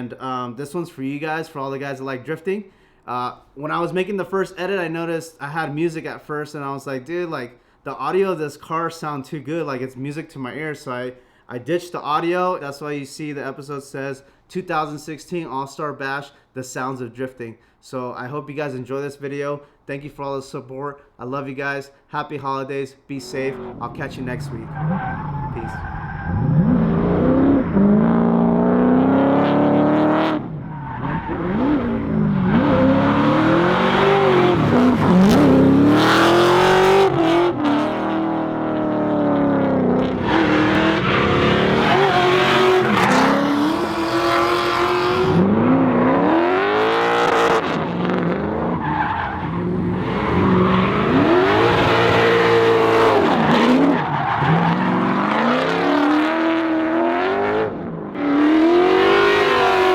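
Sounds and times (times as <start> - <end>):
tyres squealing and skidding: 23.2 - 28.3, 29.0 - 38.4, 40.0 - 46.4, 48.4 - 56.3, 58.3 - 59.9
car engines revving hard: 23.3 - 59.9.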